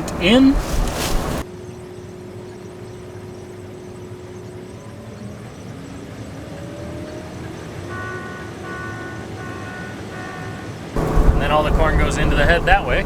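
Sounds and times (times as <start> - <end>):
combine harvester engine rumbling: 0.0 - 1.4, 11.0 - 13.0.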